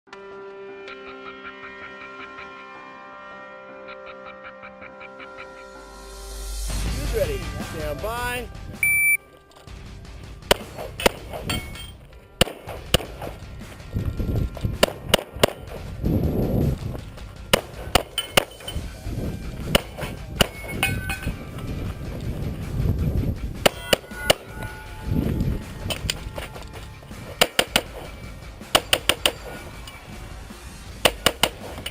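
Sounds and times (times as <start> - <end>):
pistol shots: 10.4 - 11.6, 12.4 - 13.4, 14.8 - 15.9, 17.5 - 18.7
steel targets ringing: 10.5 - 13.8, 17.5 - 19.0, 19.6 - 21.7, 23.6 - 30.2.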